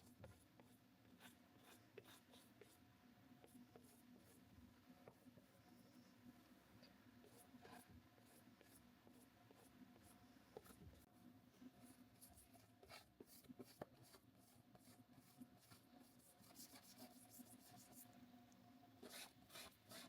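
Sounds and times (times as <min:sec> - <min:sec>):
low steady hum: 0:00.0 - 0:20.0
paintbrush strokes on canvas: 0:07.2 - 0:18.2, 0:19.0 - 0:20.0.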